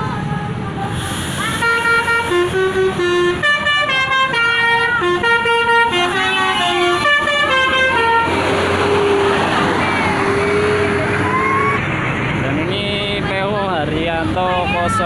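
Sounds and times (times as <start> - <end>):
multi-tone musical air horn: 1.4 - 9.3.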